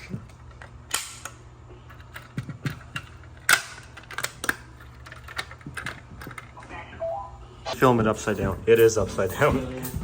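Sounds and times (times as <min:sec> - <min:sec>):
sharp handling clicks and knocks: 0:00.0 - 0:06.6
low steady hum: 0:00.0 - 0:10.0.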